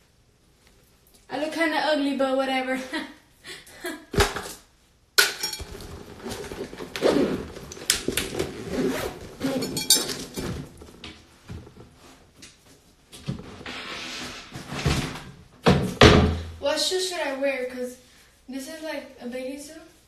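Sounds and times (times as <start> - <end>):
small hard objects clinking: 5.2 - 5.9, 9.4 - 10.5.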